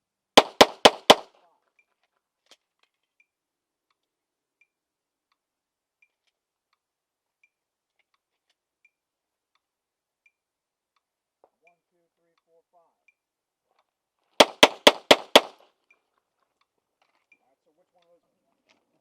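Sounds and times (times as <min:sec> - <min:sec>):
handgun shots: 0:00.4 - 0:01.3, 0:14.4 - 0:15.6
faint steady tick: 0:03.1 - 0:14.0.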